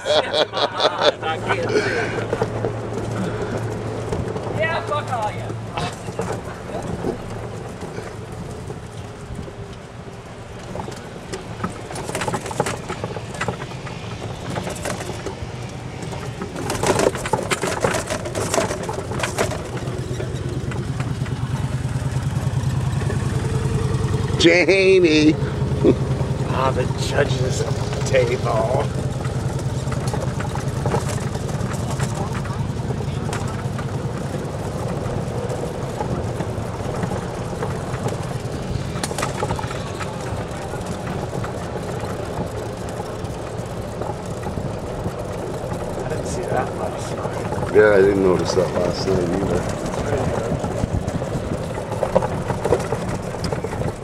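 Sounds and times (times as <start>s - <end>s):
small engine puttering: 0.0s - 54.0s
sharp clicks and crackles: 2.2s - 24.4s, 25.3s - 54.0s
faint knocks and rattles: 10.6s - 24.4s.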